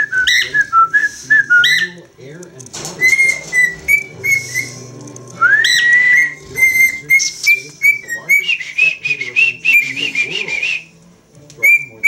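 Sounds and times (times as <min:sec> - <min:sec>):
cockatiel whistling: 0:00.0 - 0:01.9, 0:03.0 - 0:04.8, 0:05.4 - 0:10.9, 0:11.6 - 0:12.0.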